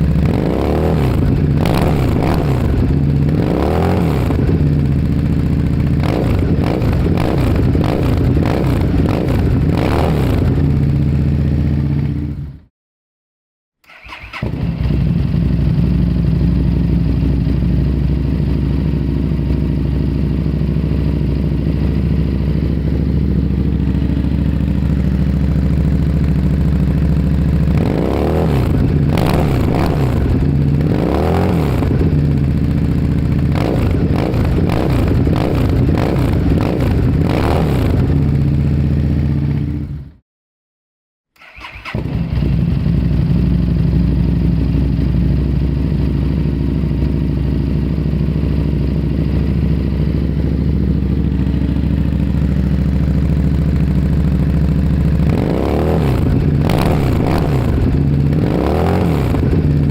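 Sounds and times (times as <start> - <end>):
engine revving with loud exhaust: 0.0 - 11.1, 24.7 - 38.6, 51.8 - 59.9.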